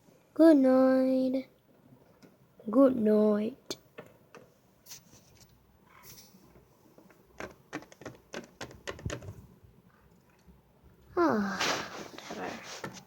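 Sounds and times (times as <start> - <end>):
plastic toy figures clicking: 7.4 - 9.4.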